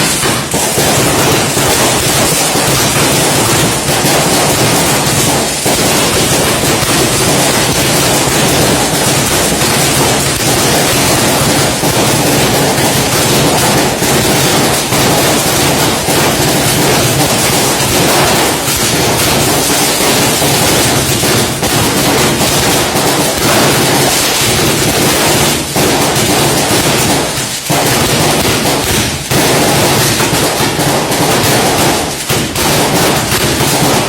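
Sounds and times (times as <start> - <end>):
firecrackers crackling: 0.0 - 34.0.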